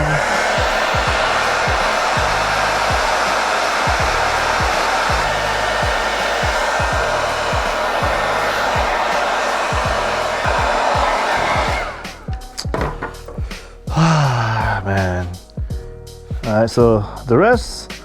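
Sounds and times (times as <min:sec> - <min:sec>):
hair dryer blowing: 0:00.0 - 0:14.3.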